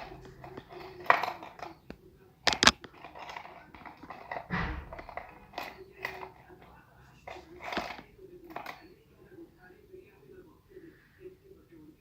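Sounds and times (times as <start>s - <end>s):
dull thump: 4.5s - 5.2s.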